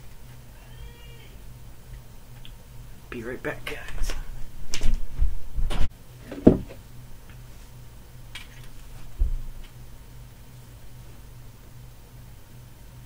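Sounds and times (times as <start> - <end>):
knocks and thumps on desk: 6.3 - 6.8.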